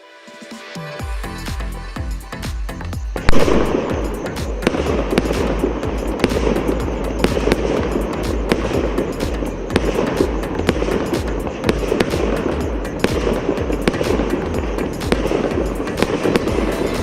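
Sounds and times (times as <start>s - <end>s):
background music: 0.0s - 17.0s
firework launches and bursts: 3.2s - 17.0s
loud firework bang: 3.3s - 9.1s.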